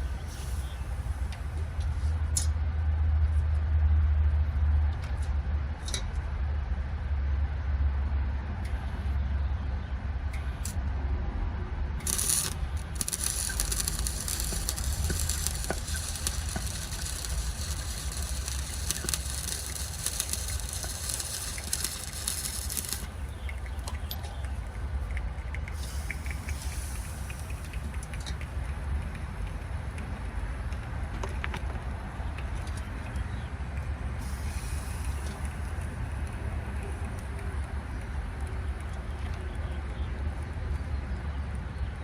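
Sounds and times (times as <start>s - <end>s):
loud hiss: 12.0s - 23.5s, 25.8s - 27.7s, 34.2s - 35.7s.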